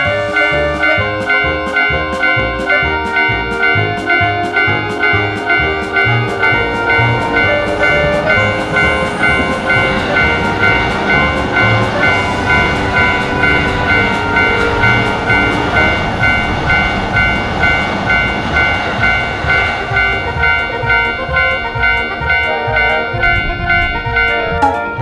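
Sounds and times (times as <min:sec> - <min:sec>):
passing train rumble: 0:00.0 - 0:25.0
railroad crossing alarm dinging: 0:00.0 - 0:25.0.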